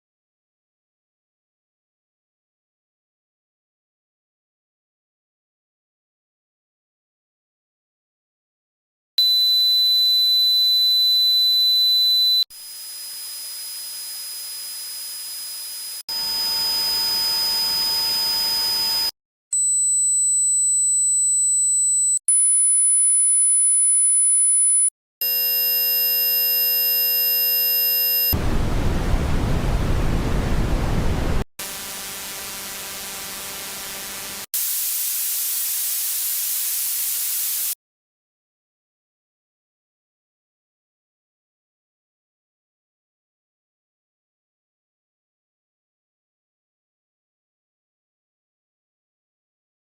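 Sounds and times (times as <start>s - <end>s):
high-pitched steady tone: 11.4s - 19.1s
buzzing hum: 12.6s - 19.1s, 25.2s - 34.5s
hiss: 34.6s - 37.8s.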